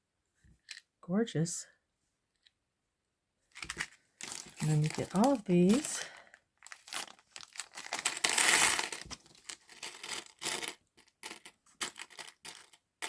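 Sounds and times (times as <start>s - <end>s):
metal charms clinking: 3.6s - 6.1s, 6.7s - 12.8s.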